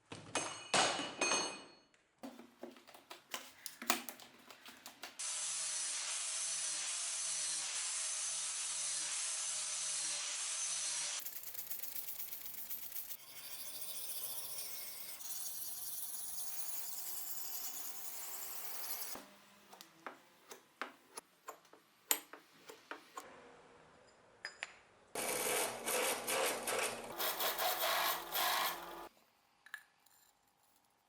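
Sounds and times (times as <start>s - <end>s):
tools clicking and tapping: 19.7s - 23.2s.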